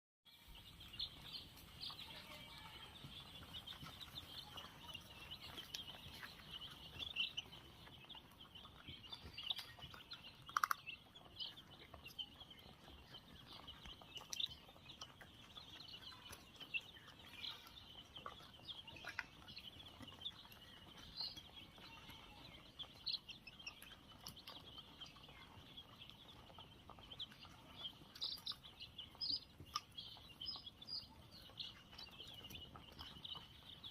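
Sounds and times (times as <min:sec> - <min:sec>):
chicks peeping: 0:00.3 - 0:33.9.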